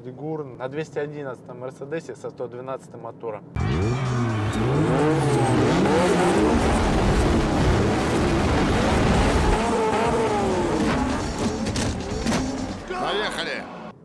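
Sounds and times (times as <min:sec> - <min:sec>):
car engine revving: 0:03.6 - 0:12.8.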